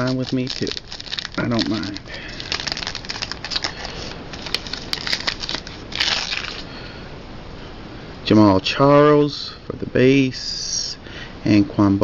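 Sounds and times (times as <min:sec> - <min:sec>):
louder wrapper rustle: 0:00.0 - 0:06.7
wrapper crinkling and tearing: 0:00.0 - 0:06.7.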